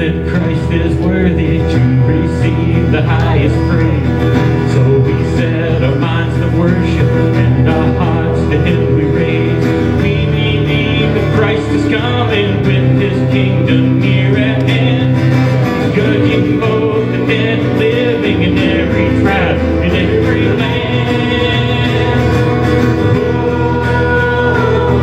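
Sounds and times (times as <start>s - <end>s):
guitar: 0.0s - 25.0s
person singing: 0.0s - 25.0s.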